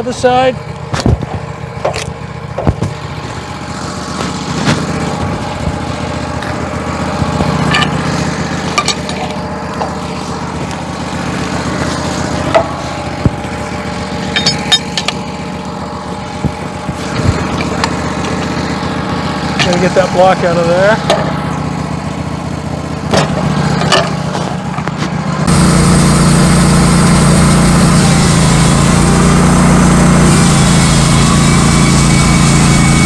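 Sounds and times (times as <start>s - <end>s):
small engine running: 0.0s - 33.0s
log knocking and clanking: 0.8s - 22.0s, 22.9s - 25.2s.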